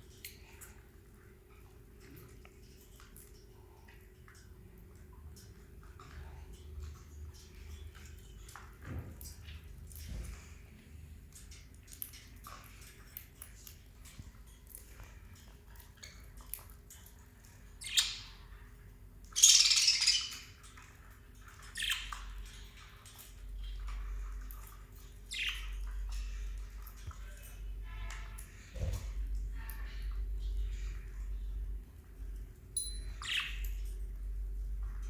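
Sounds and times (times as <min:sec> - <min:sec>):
parrots chirping: 0:17.6 - 0:18.7, 0:19.3 - 0:26.8, 0:32.8 - 0:34.0.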